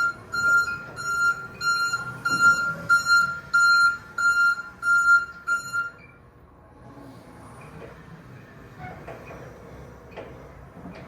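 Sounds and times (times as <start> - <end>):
rapid high warning beeps: 0.0 - 6.2.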